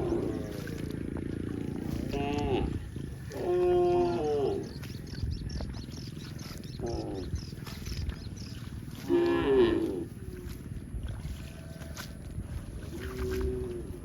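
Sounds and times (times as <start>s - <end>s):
cow mooing: 1.6s - 4.8s, 9.0s - 10.3s.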